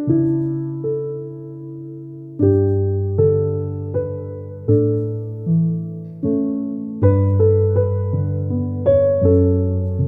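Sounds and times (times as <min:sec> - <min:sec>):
soft piano chords: 0:00.0 - 0:10.0.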